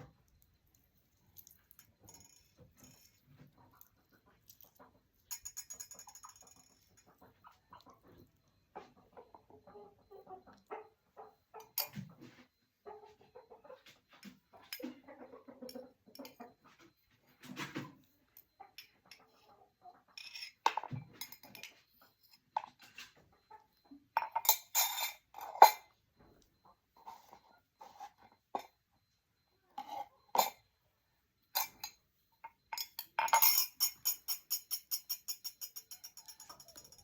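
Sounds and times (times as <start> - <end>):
utensils and dishes clinking: 5.3 - 7.1, 20.2 - 23.1, 24.2 - 25.9, 29.8 - 30.6, 31.6 - 37.0.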